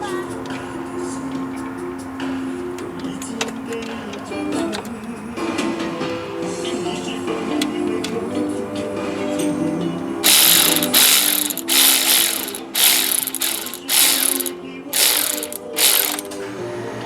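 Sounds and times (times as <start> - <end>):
ratchet wrench clicking: 10.2 - 16.4.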